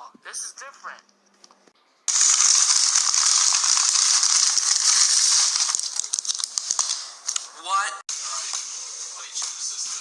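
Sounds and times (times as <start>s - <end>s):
loud crackling hissing noise: 2.1s - 6.0s.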